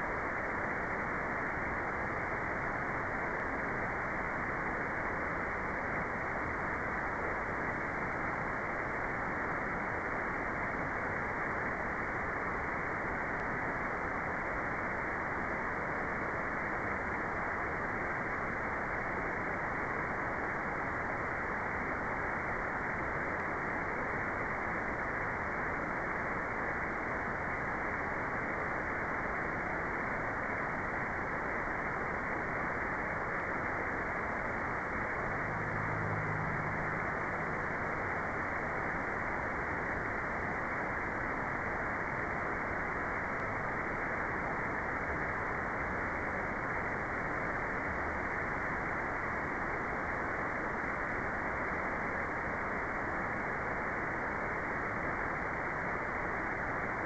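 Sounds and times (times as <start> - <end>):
muffled white noise hiss: 0.0 - 57.0
faint low hum: 31.4 - 40.3.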